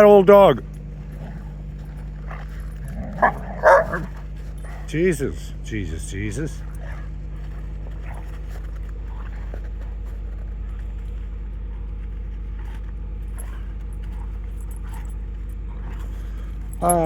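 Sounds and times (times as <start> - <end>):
diesel pickup engine droning: 0.0 - 17.0
faint jingling clicks: 0.6 - 4.9, 12.6 - 17.0.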